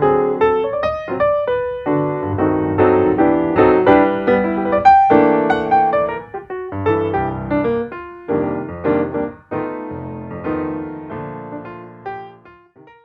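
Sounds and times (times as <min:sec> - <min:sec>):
piano music: 0:00.0 - 0:13.0.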